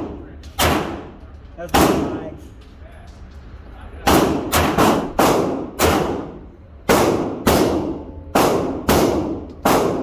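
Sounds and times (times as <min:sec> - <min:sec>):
gunshots with reverberation: 0:04.1 - 0:10.0.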